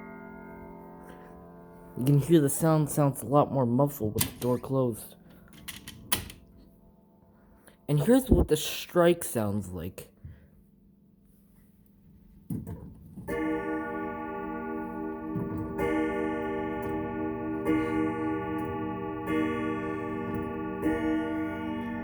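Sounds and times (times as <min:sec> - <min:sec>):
grandfather clock chime strokes: 0:13.3 - 0:22.0.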